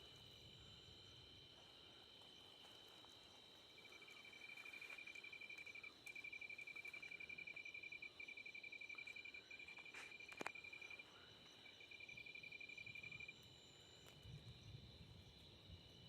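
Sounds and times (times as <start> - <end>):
cricket trilling: 0.0 - 16.0
high-pitched insect drone: 3.6 - 14.8.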